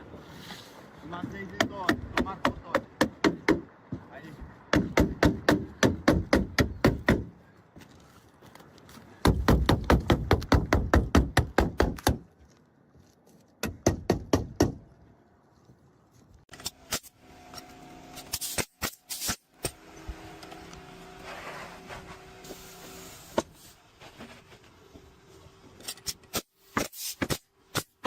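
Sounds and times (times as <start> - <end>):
hammer nailing roof shingles: 9.2 - 12.3.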